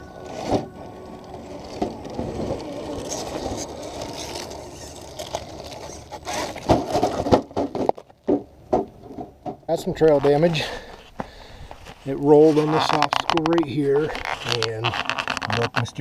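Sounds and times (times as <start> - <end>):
tires scraping over rock: 0.0 - 16.0
knocks and clatters: 1.7 - 10.3.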